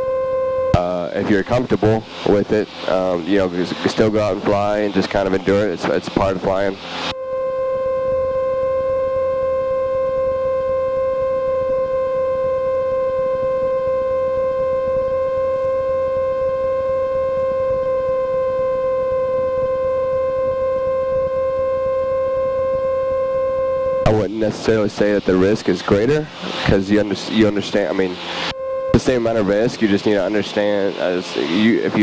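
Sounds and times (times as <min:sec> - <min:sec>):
faint low drone: 0:00.0 - 0:32.0
steady tone: 0:00.0 - 0:32.0.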